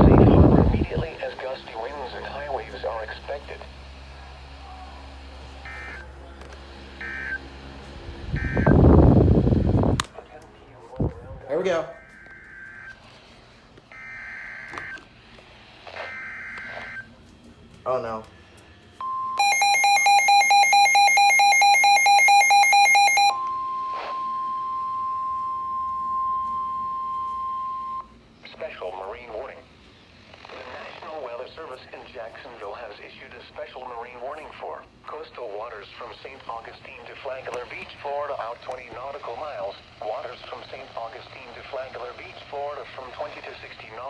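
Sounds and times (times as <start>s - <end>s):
rapid alarm beeping: 7.0s - 9.9s, 11.9s - 13.1s, 13.9s - 15.0s, 16.0s - 17.1s, 19.0s - 28.1s
buzzy digital data chirps: 8.3s - 9.7s, 16.0s - 17.1s, 19.0s - 28.1s
steady warning alert tone: 19.0s - 28.1s.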